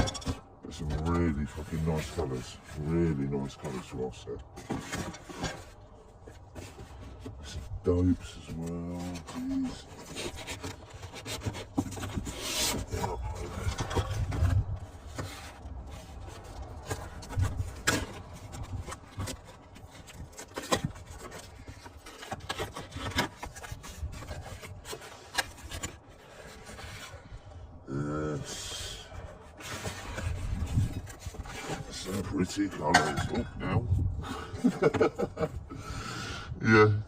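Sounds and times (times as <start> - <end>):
clicks and knocks: 0.0 - 0.5
cardboard rubbing and scraping: 0.7 - 27.4, 28.5 - 33.4.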